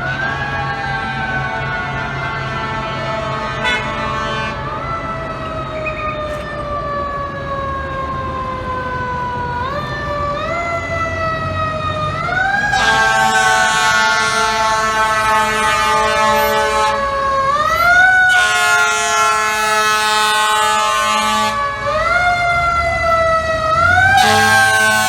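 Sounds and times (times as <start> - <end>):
mechanical siren wailing: 0.0 - 25.0
air horn blast: 1.5 - 4.8, 12.7 - 17.1, 18.3 - 21.6, 24.2 - 25.0.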